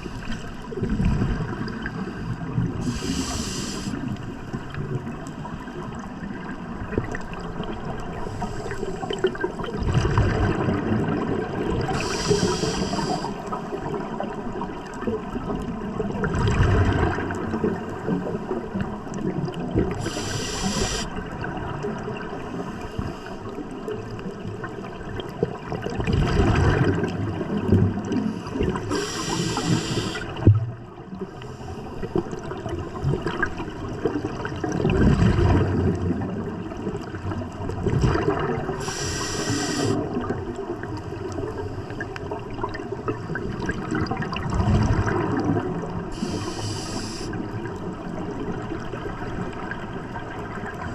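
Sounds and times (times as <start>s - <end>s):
exhaled bubbles gurgling: 0.0s - 50.9s
regulator inhale hiss: 2.0s - 4.2s, 8.2s - 9.6s, 11.9s - 13.6s, 20.0s - 21.2s, 28.2s - 30.5s, 38.8s - 40.0s, 46.1s - 47.5s.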